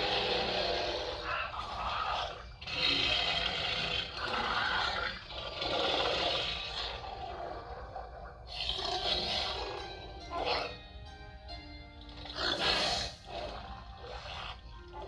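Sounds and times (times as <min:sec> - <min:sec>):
dragon roars: 0:00.0 - 0:09.8, 0:12.3 - 0:14.6.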